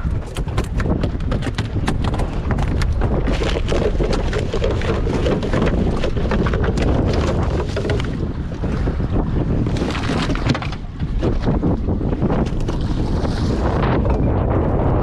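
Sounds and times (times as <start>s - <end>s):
quick knocks and clicks: 0.0s - 4.3s
wind buffeting microphone: 0.0s - 15.0s.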